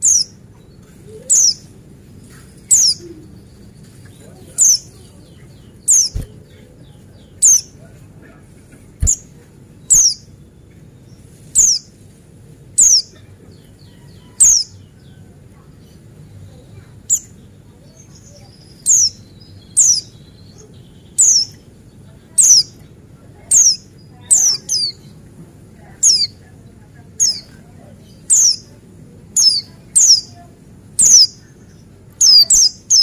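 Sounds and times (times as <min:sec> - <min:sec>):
bird giving sharp high calls: 0:00.0 - 0:00.3, 0:01.3 - 0:01.6, 0:02.7 - 0:03.0, 0:05.9 - 0:06.3, 0:07.4 - 0:07.8, 0:09.9 - 0:10.2, 0:11.6 - 0:11.8, 0:12.8 - 0:13.1, 0:21.2 - 0:21.5, 0:22.4 - 0:22.8, 0:23.5 - 0:25.0, 0:26.0 - 0:26.4, 0:27.2 - 0:27.5, 0:28.3 - 0:28.7, 0:29.4 - 0:30.3, 0:31.0 - 0:31.4, 0:32.2 - 0:33.0
soft bird twittering: 0:00.0 - 0:07.9, 0:08.9 - 0:12.0, 0:12.8 - 0:33.0.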